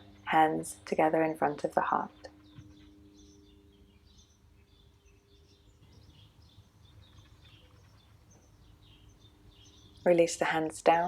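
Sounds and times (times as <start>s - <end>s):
faint bird chirps: 2.1s - 10.1s.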